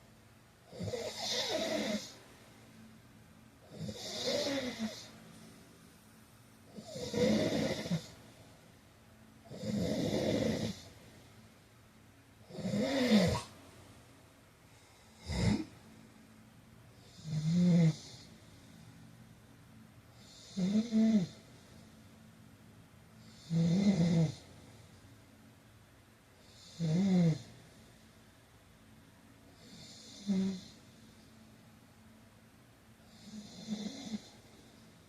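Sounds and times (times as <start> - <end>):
man snoring: 0.7 - 2.2, 3.7 - 5.1, 6.7 - 8.1, 9.5 - 10.9, 12.5 - 13.5, 15.2 - 15.7, 17.0 - 18.3, 20.2 - 21.4, 23.3 - 24.4, 26.5 - 27.5, 29.6 - 30.8, 33.1 - 34.3.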